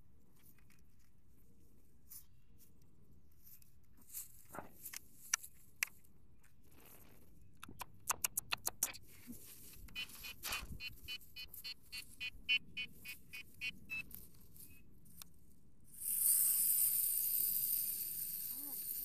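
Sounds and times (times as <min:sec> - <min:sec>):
sharp clicks and taps: 0:07.6 - 0:09.1
faint hiss: 0:15.9 - 0:19.0.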